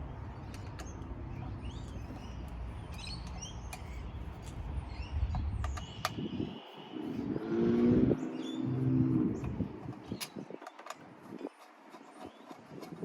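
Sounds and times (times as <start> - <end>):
birds chirping: 0.0 - 13.0
sharp clicks: 0.3 - 4.6, 5.3 - 6.3.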